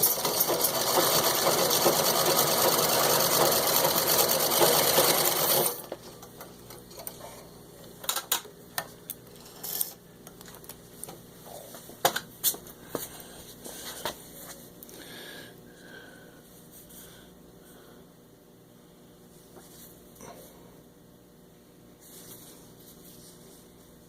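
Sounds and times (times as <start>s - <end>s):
sewing machine running: 0.0s - 6.0s.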